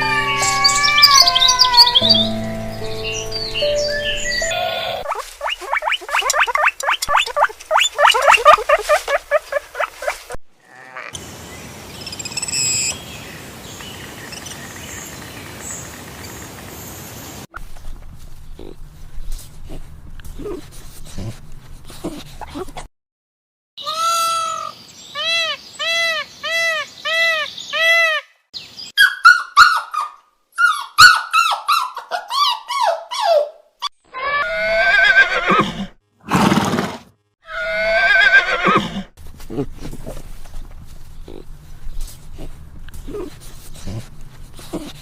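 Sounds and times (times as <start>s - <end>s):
falling pitched animal calls: 3.6s - 11.1s
harsh rasping animal calls: 4.3s - 11.2s, 37.5s - 45.0s
short pitched animal calls: 4.4s - 11.1s.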